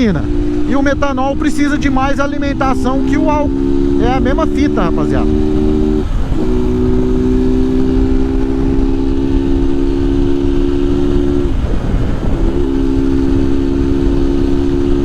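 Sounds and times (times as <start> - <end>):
motorcycle engine running: 0.0 - 15.0
wind noise on microphone: 0.0 - 15.0.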